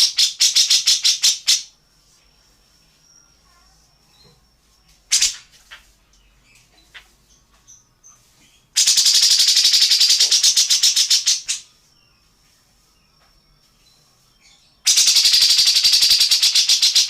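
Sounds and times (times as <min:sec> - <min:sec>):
rapid rattling bird call: 0:00.0 - 0:01.7, 0:05.1 - 0:05.9, 0:08.8 - 0:11.7, 0:14.8 - 0:17.0
faint bird chirps: 0:00.0 - 0:17.0.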